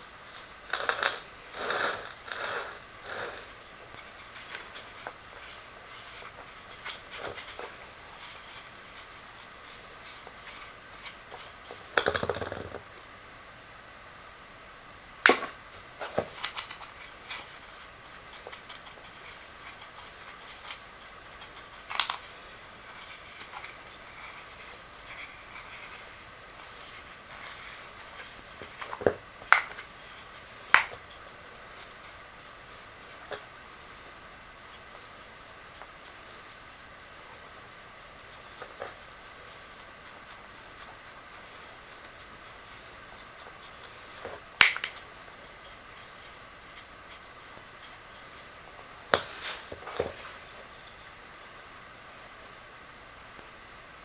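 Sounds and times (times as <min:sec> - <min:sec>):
scraping rustle: 0:49.2 - 0:51.1.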